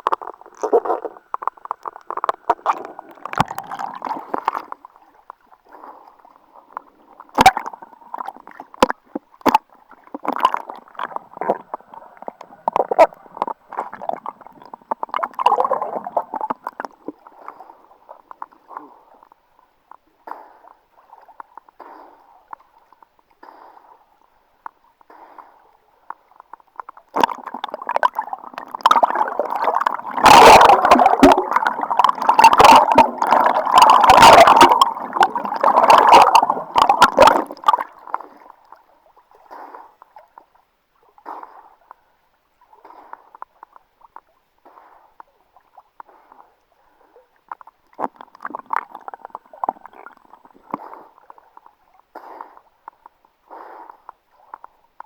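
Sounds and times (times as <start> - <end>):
water splashing and gurgling: 0.0 - 23.0, 25.4 - 40.5, 47.5 - 52.0.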